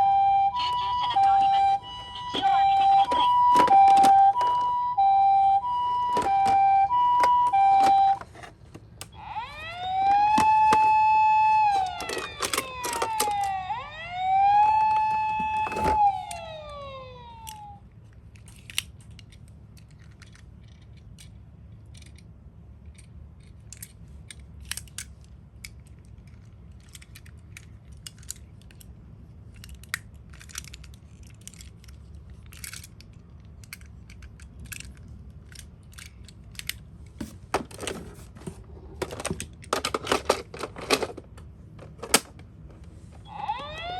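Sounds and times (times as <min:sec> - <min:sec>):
toy electronic siren: 0:00.0 - 0:17.8, 0:43.2 - 0:43.9.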